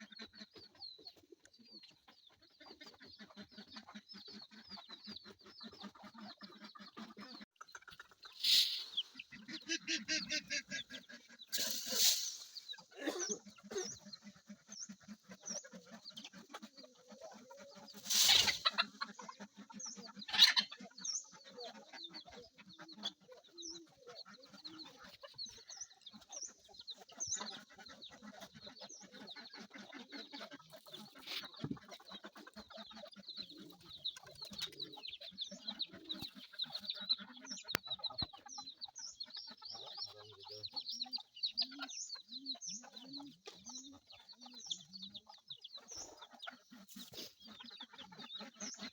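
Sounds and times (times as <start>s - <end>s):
chickens clucking: 0.0s - 48.9s
loud chicken calls: 5.4s - 38.2s.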